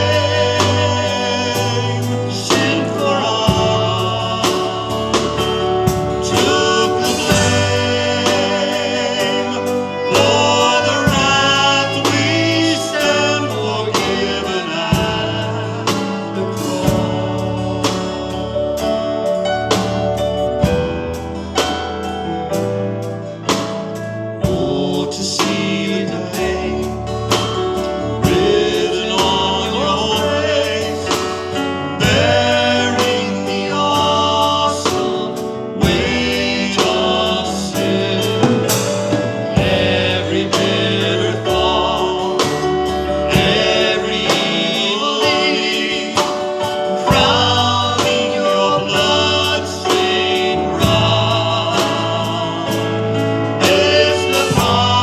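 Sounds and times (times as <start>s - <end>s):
voices singing: 0.0s - 55.0s
instrumental backing with beat: 31.0s - 55.0s.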